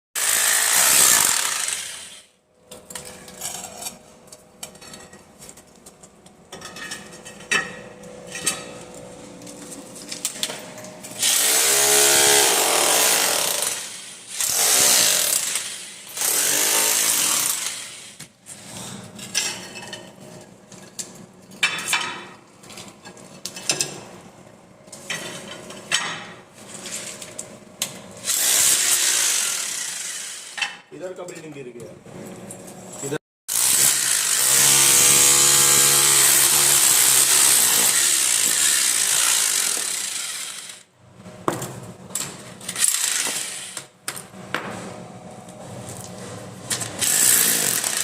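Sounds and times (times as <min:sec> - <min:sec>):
hammer drill running: 0:00.2 - 0:02.3, 0:11.2 - 0:18.0, 0:33.5 - 0:40.8, 0:47.0 - 0:48.0.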